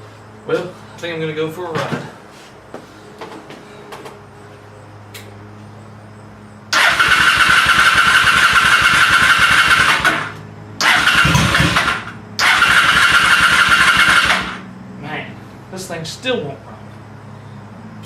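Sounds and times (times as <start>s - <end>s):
motorcycle starter cranking engine: 6.7s - 14.7s.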